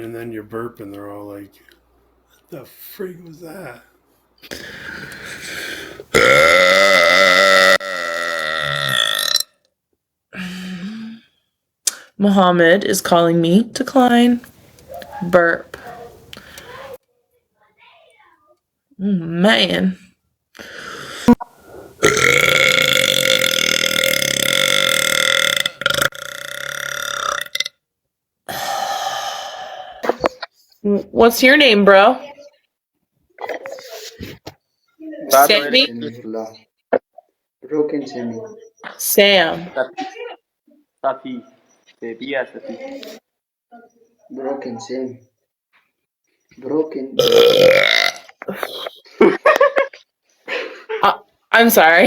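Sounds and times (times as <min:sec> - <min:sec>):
long loud belch: 0:06.1 - 0:09.6, 0:22.0 - 0:27.8, 0:47.2 - 0:48.3.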